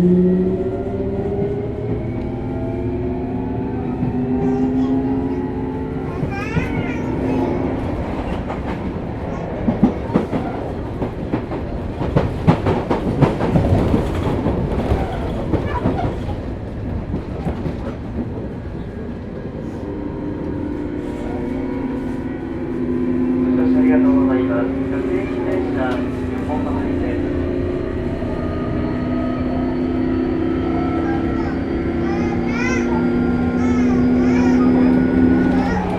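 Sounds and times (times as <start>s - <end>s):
wheels clattering over rail joints: 6.1s - 18.8s.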